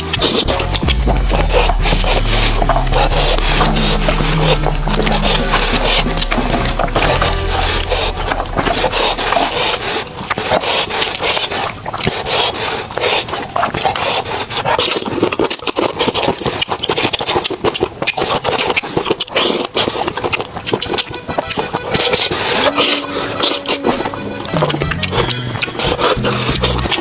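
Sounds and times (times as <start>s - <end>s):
crunching of crisp food: 9.8s - 27.0s.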